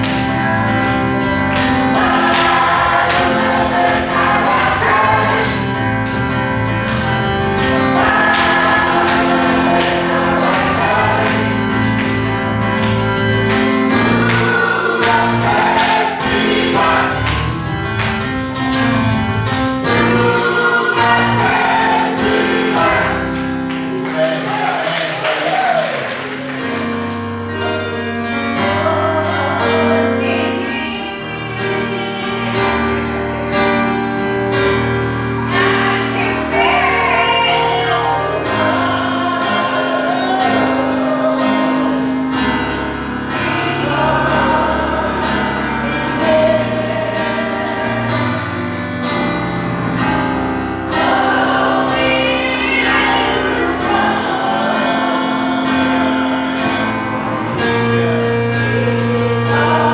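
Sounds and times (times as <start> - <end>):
gospel choir singing: 0.0 - 59.9
bass line: 9.7 - 23.7.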